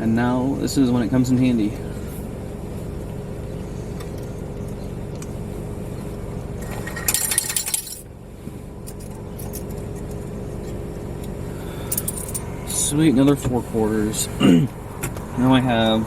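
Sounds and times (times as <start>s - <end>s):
car engine idling: 0.0s - 16.0s
coins clattering into metal tray: 6.8s - 8.0s.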